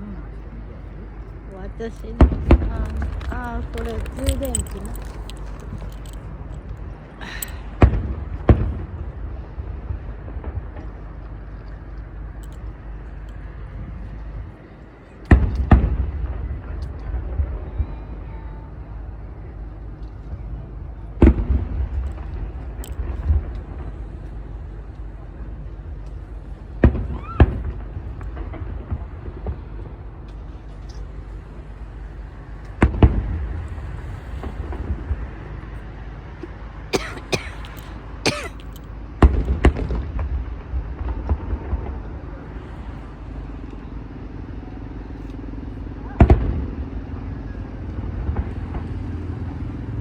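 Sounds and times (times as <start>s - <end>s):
fireworks cracking: 2.1s - 11.2s, 39.2s - 43.2s
fireworks booming: 2.2s - 5.1s, 5.7s - 11.2s, 21.2s - 32.1s, 32.7s - 35.6s, 39.2s - 42.8s
cough-like sound: 36.9s - 38.7s
fireworks bursting: 39.2s - 42.6s.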